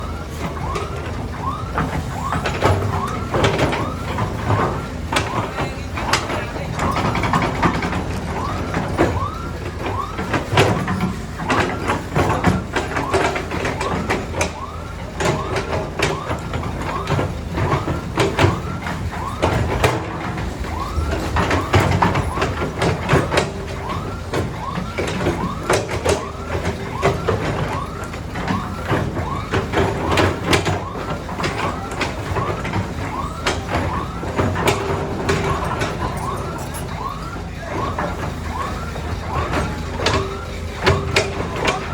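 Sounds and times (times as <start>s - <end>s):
heavy diesel machinery running: 0.0s - 41.9s
metallic clanks and knocks: 0.4s - 41.9s.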